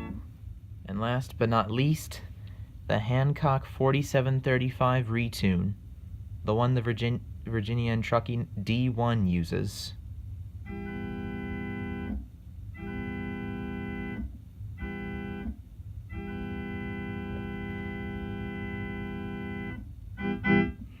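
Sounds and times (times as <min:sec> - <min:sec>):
electronic keyboard chord: 0:00.0 - 0:00.3, 0:10.7 - 0:12.2, 0:12.8 - 0:21.0.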